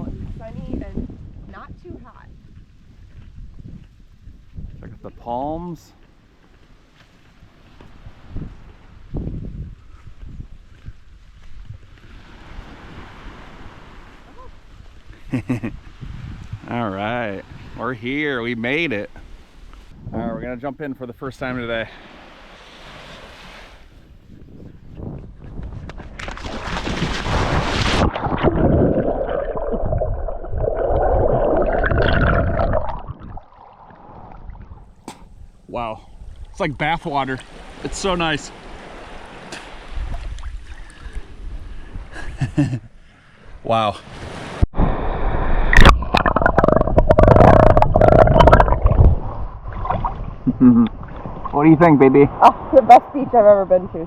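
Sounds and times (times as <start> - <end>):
splash into water: 25.9 - 35.2
underwater gurgling: 27.2 - 35.0, 44.8 - 51.5.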